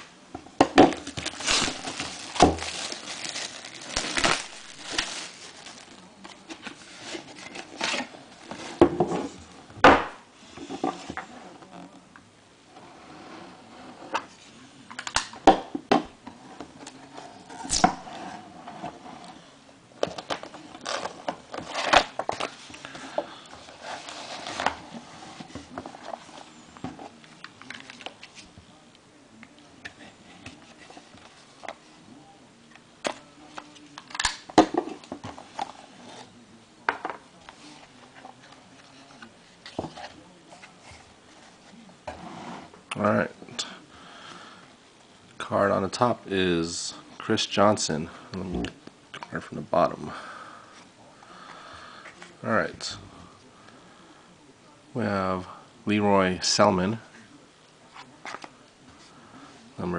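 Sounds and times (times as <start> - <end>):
wrapper and cardboard crinkling: 0.9 - 8.1.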